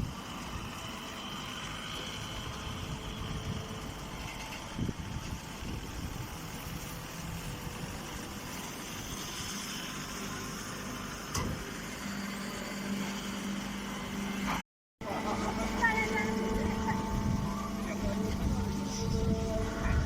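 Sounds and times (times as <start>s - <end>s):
baler engine running: 0.0s - 20.0s
steady low hum: 12.2s - 20.0s.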